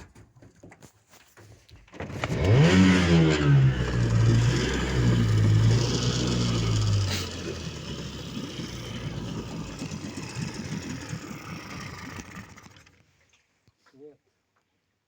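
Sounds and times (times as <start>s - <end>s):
outboard motor running: 1.9s - 13.4s.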